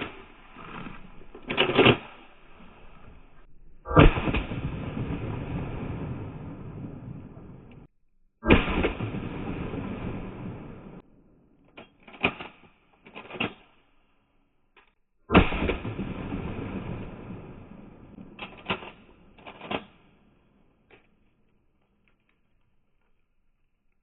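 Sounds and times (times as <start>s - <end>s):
shotgun shot echoing: 3.9s - 11.0s, 15.3s - 17.6s.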